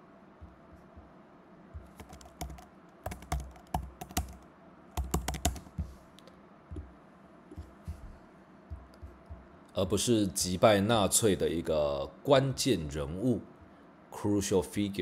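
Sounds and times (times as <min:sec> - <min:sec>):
typing on computer keyboard: 0:01.8 - 0:05.9.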